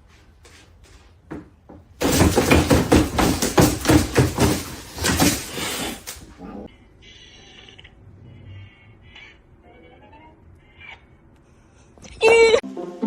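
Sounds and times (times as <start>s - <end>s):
rapid knocks and bangs: 1.3s - 6.2s.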